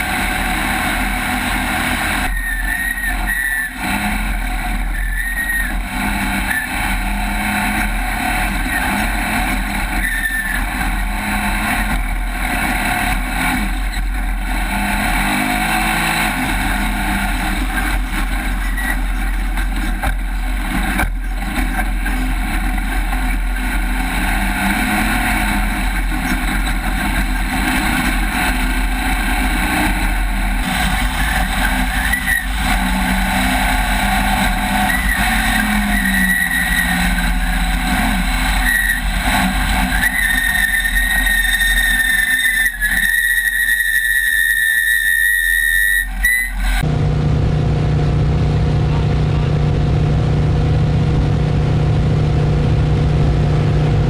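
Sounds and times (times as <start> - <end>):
race vehicle engine running hard: 0.0 - 45.2, 45.8 - 54.0
loud rush of noise: 46.7 - 54.0.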